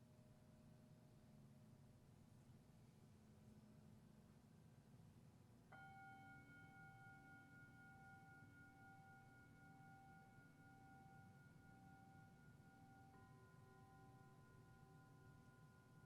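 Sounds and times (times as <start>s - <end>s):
singing bowl ringing: 5.8s - 16.0s.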